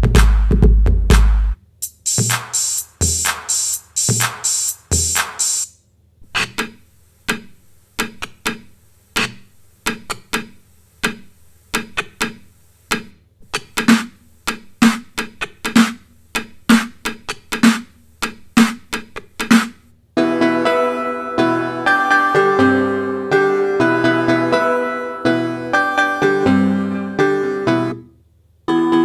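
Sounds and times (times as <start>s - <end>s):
drum machine beat: 0.0s - 5.8s, 9.2s - 19.9s.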